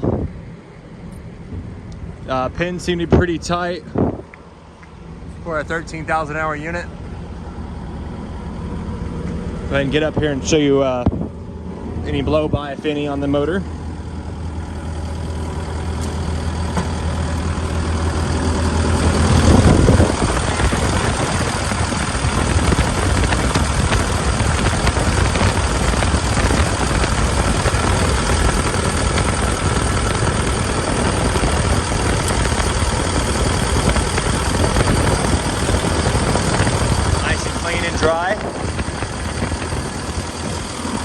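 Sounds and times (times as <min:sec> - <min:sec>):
diesel engine idling: 0:00.0 - 0:41.0.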